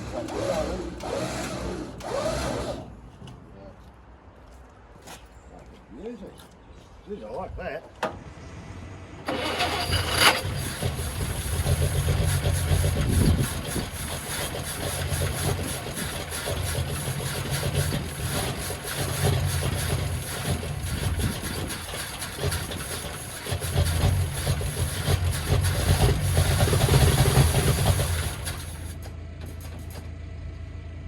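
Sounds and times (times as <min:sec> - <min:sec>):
car engine running: 0:09.3 - 0:31.0.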